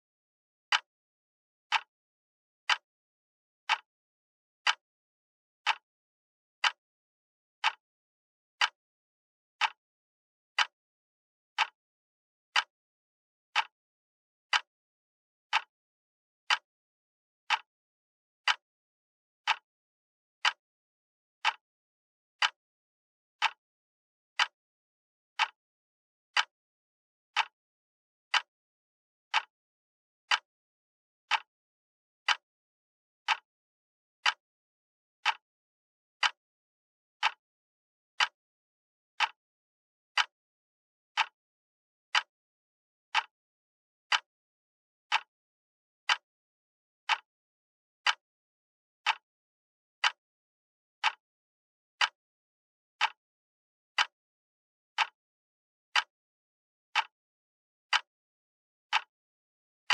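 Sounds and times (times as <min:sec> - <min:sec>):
clock ticking: 0:02.7 - 0:02.9, 0:04.6 - 0:04.8, 0:06.6 - 0:06.8, 0:07.6 - 0:07.8, 0:08.6 - 0:08.8, 0:11.6 - 0:11.8, 0:12.6 - 0:12.8, 0:13.6 - 0:13.8, 0:14.5 - 0:14.7, 0:16.5 - 0:16.7, 0:17.5 - 0:17.7, 0:18.4 - 0:18.6, 0:19.4 - 0:19.7, 0:20.4 - 0:20.6, 0:21.4 - 0:21.6, 0:22.4 - 0:22.6, 0:23.4 - 0:23.6, 0:24.4 - 0:24.6, 0:25.4 - 0:25.6, 0:26.4 - 0:26.6, 0:28.3 - 0:28.5, 0:29.3 - 0:29.5, 0:30.3 - 0:30.5, 0:31.3 - 0:31.5, 0:32.2 - 0:32.5, 0:34.2 - 0:34.4, 0:35.2 - 0:35.4, 0:36.2 - 0:36.4, 0:37.2 - 0:37.4, 0:40.2 - 0:40.4, 0:41.2 - 0:41.4, 0:42.1 - 0:42.3, 0:43.1 - 0:43.3, 0:45.1 - 0:45.3, 0:46.1 - 0:46.3, 0:49.0 - 0:49.2, 0:51.0 - 0:51.2.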